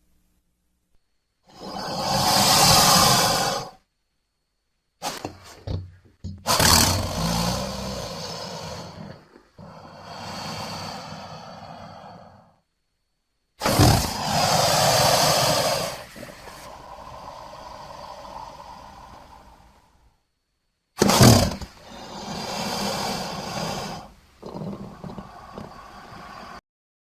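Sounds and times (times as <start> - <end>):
crocodile growling: 1.5 - 3.8, 6.4 - 12.6, 13.6 - 20.0, 21.0 - 26.6.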